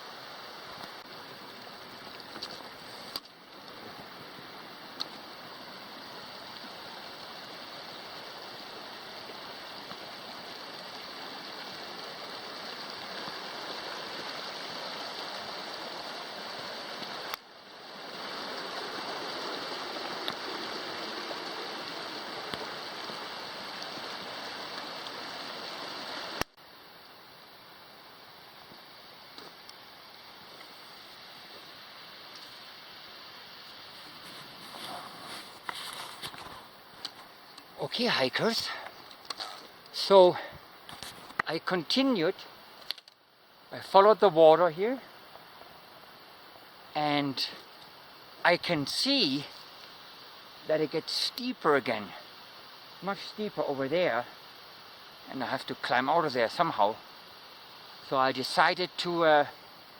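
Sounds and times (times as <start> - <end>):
mountain stream rushing: 0.0 - 59.9.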